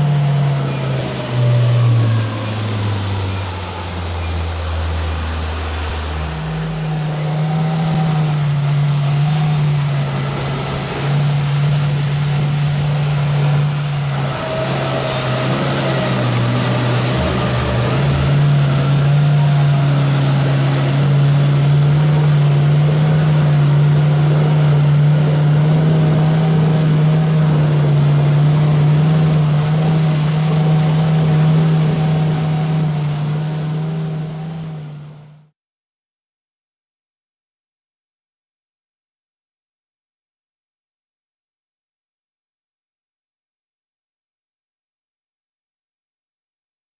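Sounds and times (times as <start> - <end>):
wind and water rushing: 0.0 - 35.3
boat motor droning: 0.0 - 35.5.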